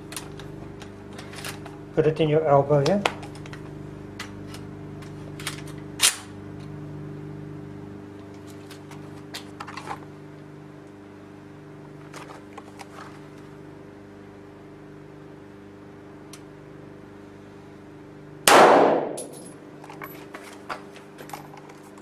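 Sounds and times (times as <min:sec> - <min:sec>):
steady low hum: 0:00.0 - 0:22.0
carbine gunshot: 0:18.5 - 0:19.3.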